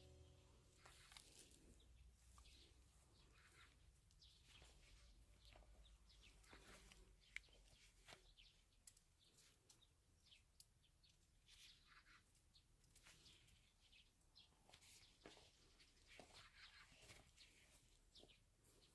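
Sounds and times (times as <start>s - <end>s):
faint bird chirps: 0.0s - 18.9s
light ticks: 6.4s - 9.9s.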